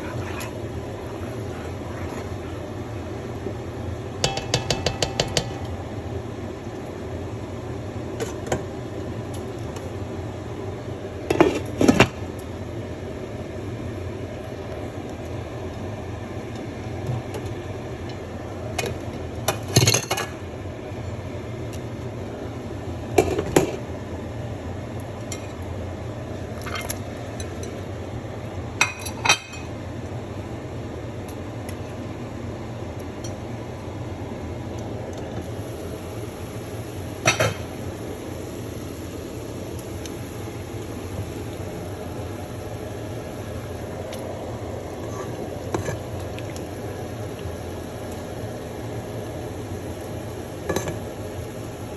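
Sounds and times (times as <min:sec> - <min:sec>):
steady low hum: 0:00.0 - 0:07.7, 0:35.4 - 0:51.9.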